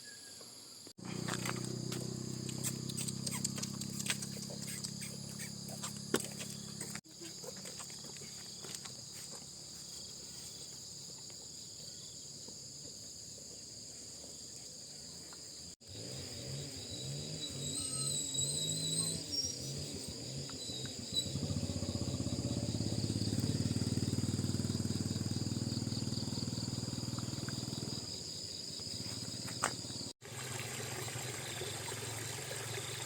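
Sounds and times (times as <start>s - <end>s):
insects shrilling: 2.2s - 7.5s.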